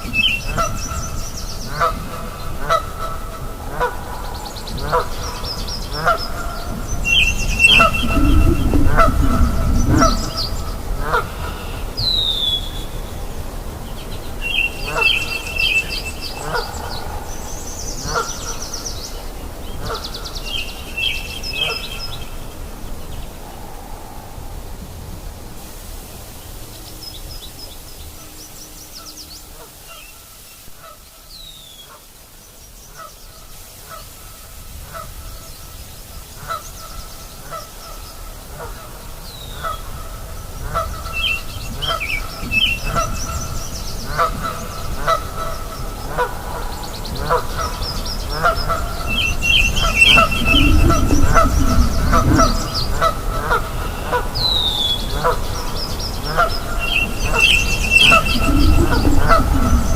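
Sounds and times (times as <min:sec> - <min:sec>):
small birds chirping: 0:04.2 - 0:13.2, 0:40.8 - 0:59.9
frogs honking: 0:04.8 - 0:12.6, 0:40.0 - 0:59.9
low rumble: 0:06.6 - 0:11.9, 0:50.2 - 0:53.4, 0:57.0 - 0:59.9.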